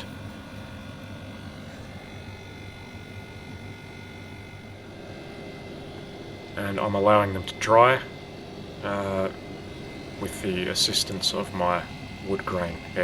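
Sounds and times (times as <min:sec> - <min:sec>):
air conditioner humming: 0:00.0 - 0:13.0
high-pitched whine: 0:00.0 - 0:13.0.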